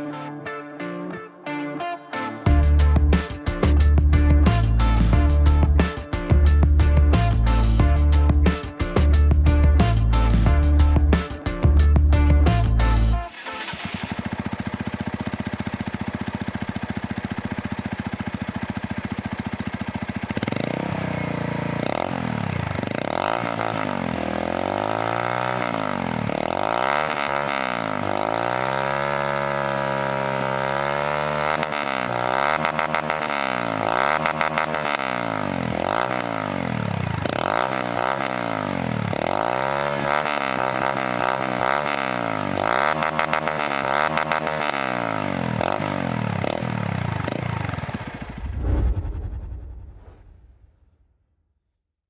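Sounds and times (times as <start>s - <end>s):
motorcycle engine revving: 12.4s - 49.7s.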